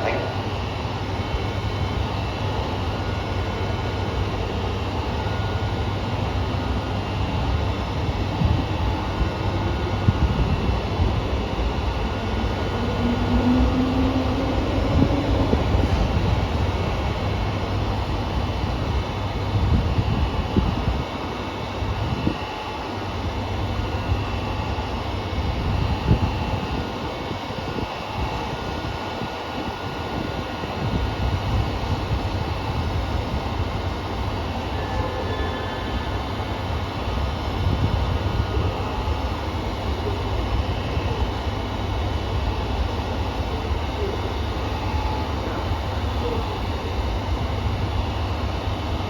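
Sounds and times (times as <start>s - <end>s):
diesel railcar engine idling: 0.0s - 20.3s
diesel railcar engines idling: 0.0s - 49.0s.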